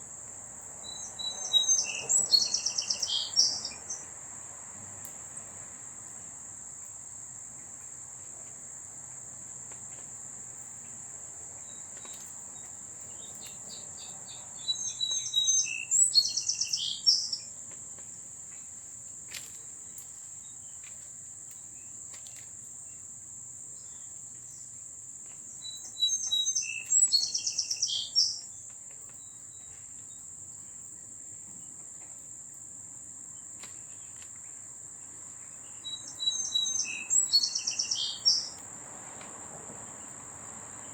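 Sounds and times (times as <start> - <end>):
insect drone: 0.0 - 40.9
songbird warbling: 0.9 - 4.1, 13.1 - 17.5, 25.6 - 28.4, 35.8 - 38.6.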